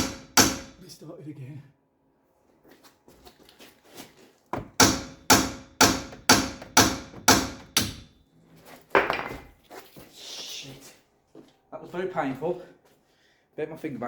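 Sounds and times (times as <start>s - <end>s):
hammer striking metal bolt: 0.0s - 0.8s, 4.6s - 8.1s.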